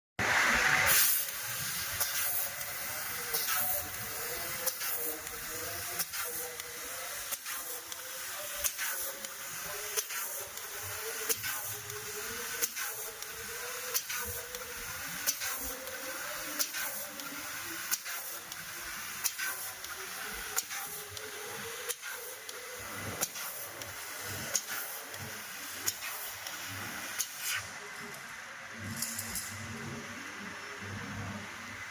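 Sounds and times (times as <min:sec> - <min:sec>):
laser cutter hissing: 0:00.2 - 0:31.9
sharp mechanical clicks: 0:19.2 - 0:22.6.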